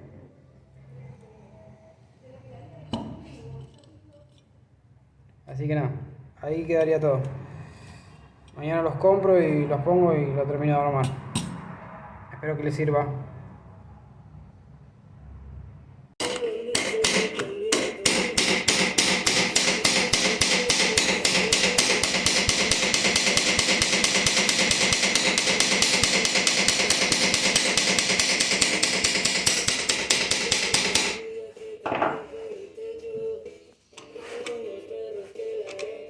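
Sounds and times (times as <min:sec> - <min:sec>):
hammer striking metal rivets: 0:16.2 - 0:31.2.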